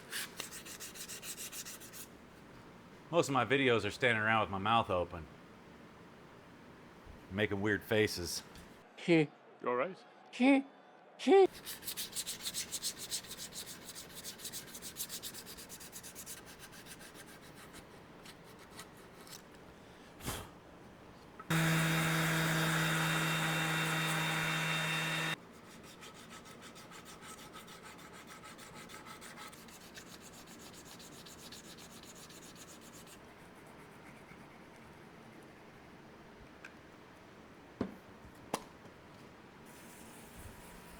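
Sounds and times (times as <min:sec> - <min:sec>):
sandpaper scraping wood: 0:00.0 - 0:02.1, 0:11.5 - 0:19.4, 0:21.5 - 0:34.5.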